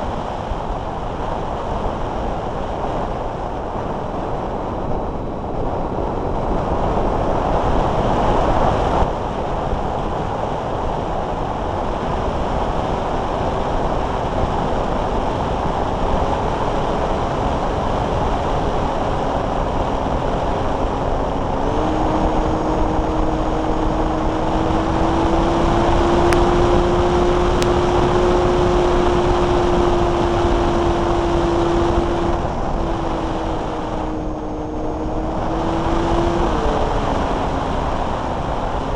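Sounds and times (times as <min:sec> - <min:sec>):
airflow rushing over camera: 0:01.7 - 0:38.9
electric motor and propeller hum: 0:09.9 - 0:38.9.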